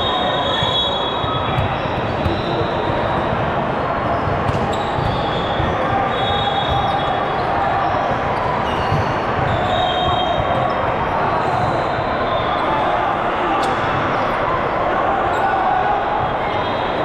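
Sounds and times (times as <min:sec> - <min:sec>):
hubbub of many voices: 0:00.0 - 0:17.0
sneakers squeaking on court: 0:00.5 - 0:03.4, 0:04.0 - 0:07.6.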